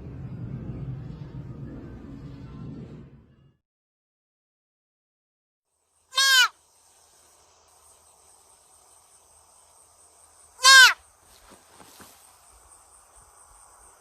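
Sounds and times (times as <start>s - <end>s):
short high animal calls: 6.1s - 6.6s, 10.6s - 11.0s.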